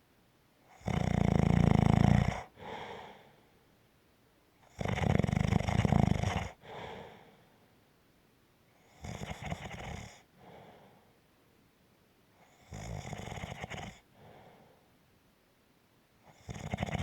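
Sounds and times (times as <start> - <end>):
soft breath out: 2.6 - 3.6, 6.6 - 7.7, 10.4 - 11.2, 14.1 - 14.9.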